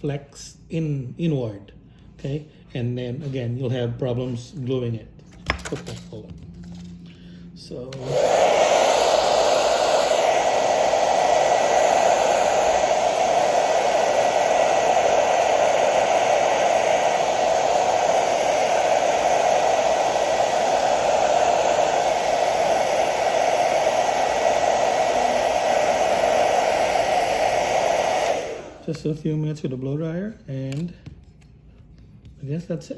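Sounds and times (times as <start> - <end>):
blow dryer running: 7.1 - 29.7.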